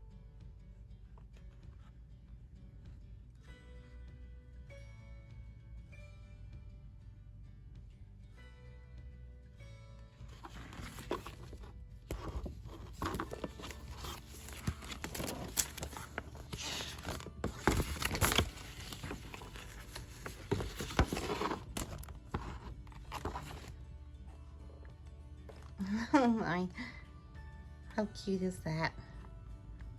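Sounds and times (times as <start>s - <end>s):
packaging rustling and crinkling: 10.4s - 23.8s.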